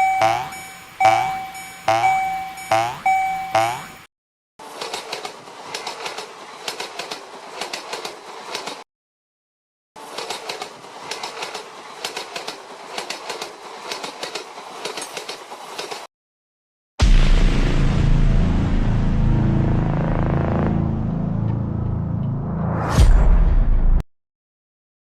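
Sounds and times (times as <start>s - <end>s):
train wheels clickety-clack: 4.6s - 8.8s, 10.0s - 16.1s.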